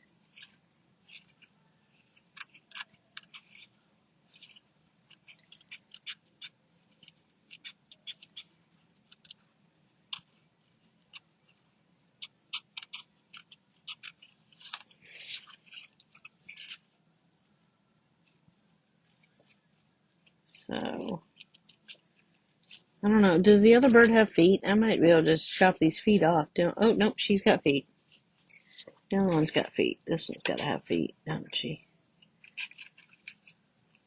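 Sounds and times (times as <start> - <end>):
scissors snipping paper: 0.3 - 9.4, 12.2 - 16.9, 32.4 - 34.0.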